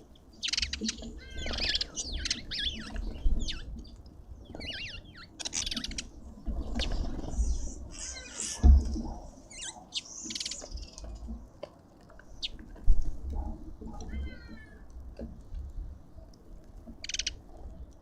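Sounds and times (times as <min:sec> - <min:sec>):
birds chirping and whistling: 0:00.4 - 0:08.7, 0:09.5 - 0:11.1.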